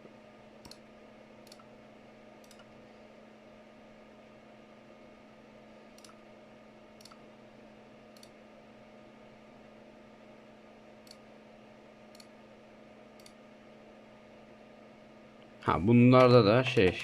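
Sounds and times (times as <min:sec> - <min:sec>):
faint steady hum: 0:00.0 - 0:17.0
computer mouse clicks: 0:00.6 - 0:00.8, 0:01.4 - 0:01.7, 0:02.4 - 0:02.7, 0:05.9 - 0:06.2, 0:07.0 - 0:07.2, 0:08.1 - 0:08.4, 0:11.0 - 0:11.2, 0:12.1 - 0:12.3, 0:13.2 - 0:13.4.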